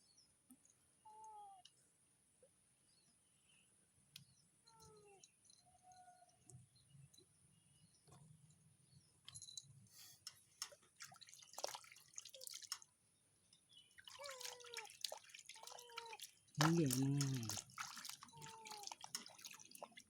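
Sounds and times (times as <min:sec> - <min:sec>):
water dripping and splashing: 0:10.2 - 0:13.0, 0:13.8 - 0:20.0.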